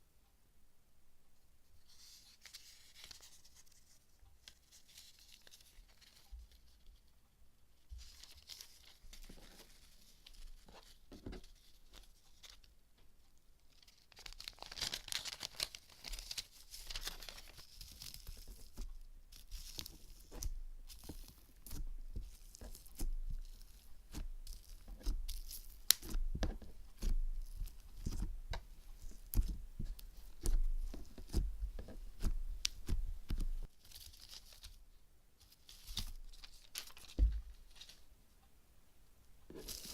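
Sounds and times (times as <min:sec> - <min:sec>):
slime rustling: 0:07.8 - 0:12.7, 0:13.6 - 0:38.2, 0:39.4 - 0:39.9
slime crackling and popping: 0:14.1 - 0:34.6
soft squelching thuds: 0:20.0 - 0:33.7, 0:37.1 - 0:37.6.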